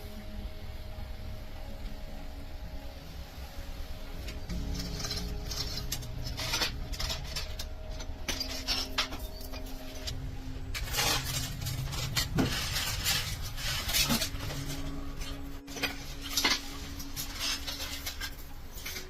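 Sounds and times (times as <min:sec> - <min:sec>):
steady low hum: 0:00.0 - 0:19.0
metal tools clinking: 0:04.5 - 0:10.2.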